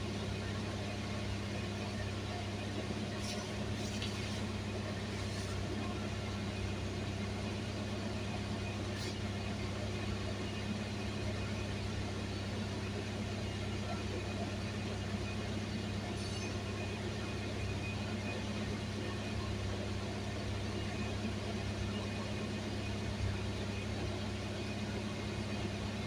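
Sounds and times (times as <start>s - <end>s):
car engine hum: 0.0s - 26.0s
road noise: 2.8s - 10.0s.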